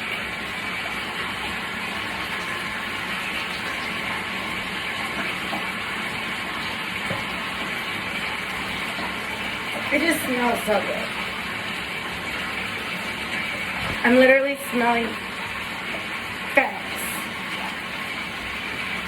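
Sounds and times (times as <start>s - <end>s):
washing machine motor hum: 0.0s - 19.0s
whooshing water in tub: 0.0s - 19.0s.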